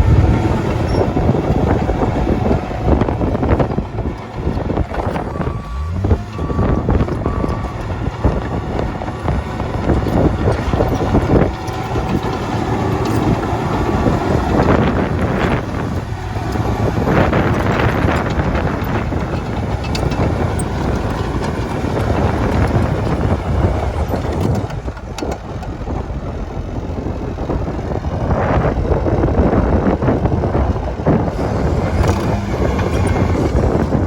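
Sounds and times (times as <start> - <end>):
bulldozer diesel engine running: 0.0 - 34.0.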